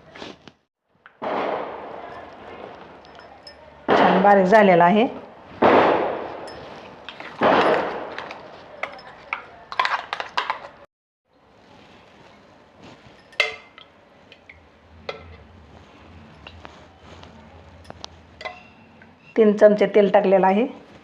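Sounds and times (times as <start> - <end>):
kitchen utensils clinking: 2.1 - 3.8, 6.4 - 10.9, 12.9 - 15.5, 17.7 - 20.1
dishes and pans clinking: 6.4 - 10.7, 13.0 - 15.4, 17.8 - 18.9.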